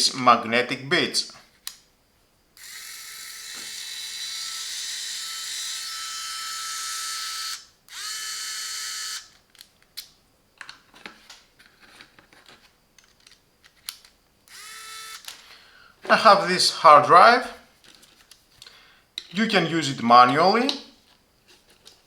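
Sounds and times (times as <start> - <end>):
electric screwdriver motor whining: 2.6 - 9.4, 14.5 - 15.3.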